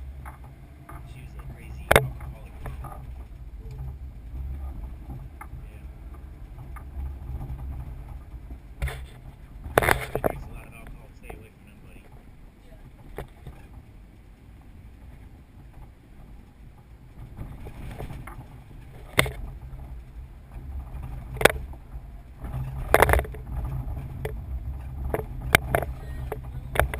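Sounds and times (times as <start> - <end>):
car engine and road rumble: 0.0 - 26.9
sharp knocks and rattles: 0.0 - 26.9.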